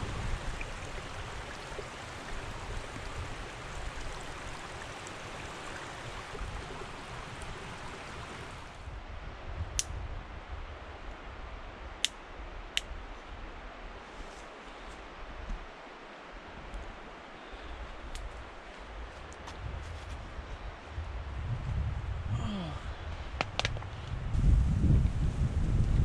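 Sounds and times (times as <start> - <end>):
mountain stream rushing: 0.0 - 8.9.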